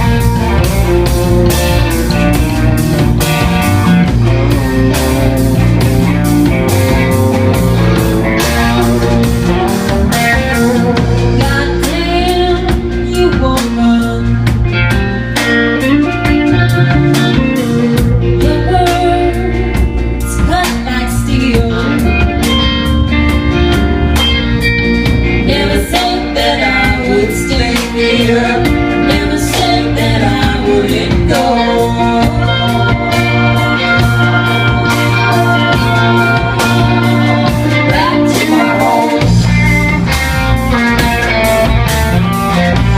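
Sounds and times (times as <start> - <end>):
drum kit: 0.0 - 42.9
electric guitar: 0.0 - 42.9
person singing: 7.6 - 14.7, 25.4 - 39.7.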